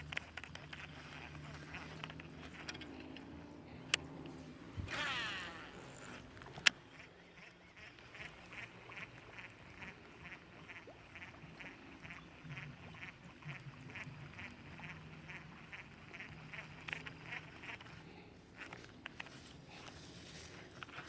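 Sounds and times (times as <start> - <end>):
reel bail click: 0.0 - 6.8, 16.2 - 20.0
reel cranking ticks: 0.0 - 7.1, 15.3 - 19.4
fishing line whirring off reel: 0.0 - 12.2, 14.3 - 20.0.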